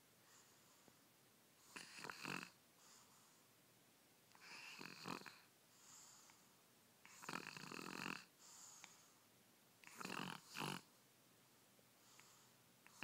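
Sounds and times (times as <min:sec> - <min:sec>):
baby snoring: 0:01.7 - 0:02.6, 0:04.4 - 0:05.5, 0:07.1 - 0:08.3, 0:09.8 - 0:10.9.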